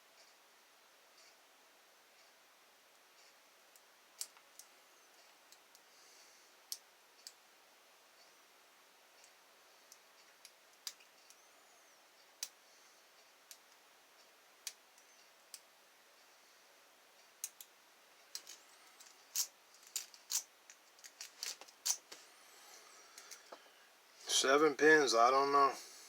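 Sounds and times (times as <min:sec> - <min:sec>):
lock pick clicking on pins: 0:18.3 - 0:22.0.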